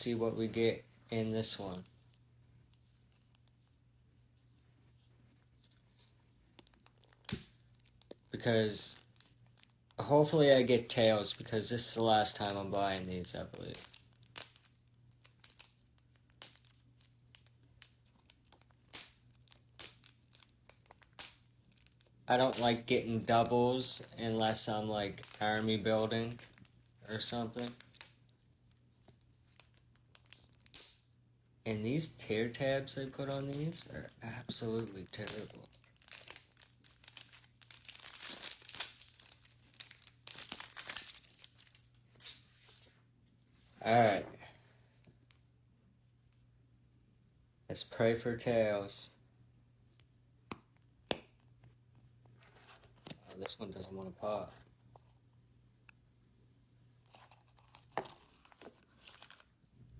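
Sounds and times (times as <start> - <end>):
plastic wrapper crinkling and tearing: 5.6 - 31.0, 32.2 - 42.8, 57.0 - 59.7.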